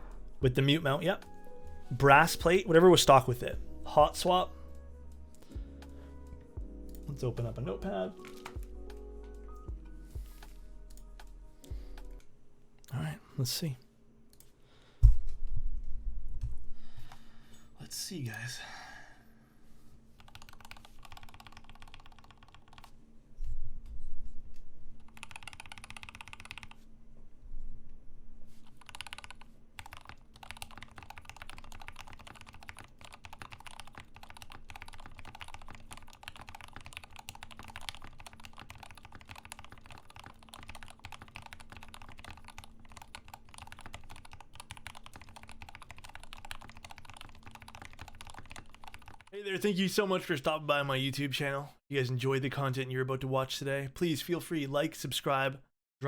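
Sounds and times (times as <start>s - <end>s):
mechanical keyboard typing: 20.2s - 22.9s, 25.1s - 26.8s, 28.6s - 49.3s.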